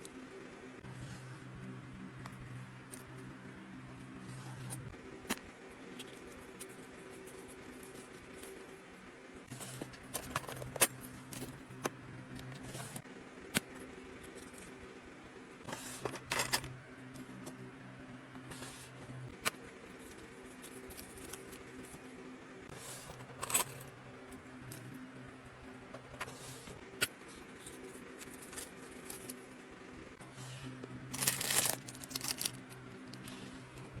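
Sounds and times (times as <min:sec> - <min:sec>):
faint steady hum: 0:00.0 - 0:34.0
metal keyrings clinking and jangling: 0:31.2 - 0:32.6.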